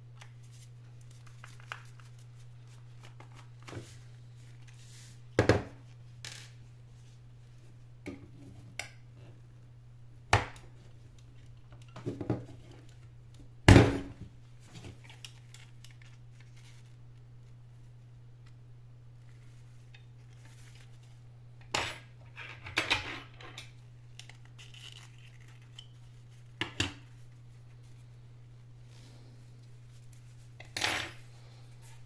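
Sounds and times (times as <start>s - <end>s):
steady low hum: 23.6s - 32.0s.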